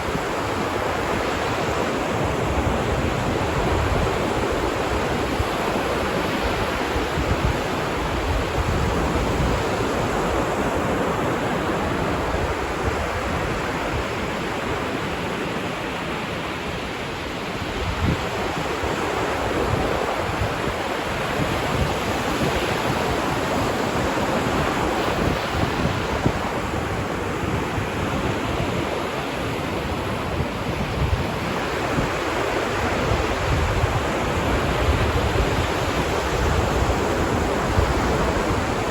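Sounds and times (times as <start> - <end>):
ocean waves washing onto beach: 0.0 - 38.9
wind buffeting microphone: 0.0 - 38.9.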